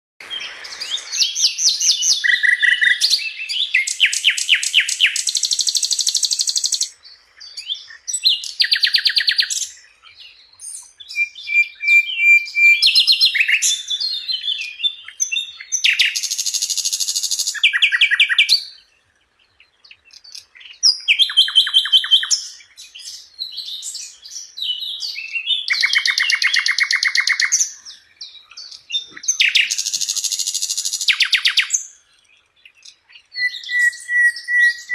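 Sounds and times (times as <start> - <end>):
bird singing high trills: 0.2 - 18.9, 20.0 - 32.0, 32.7 - 34.9.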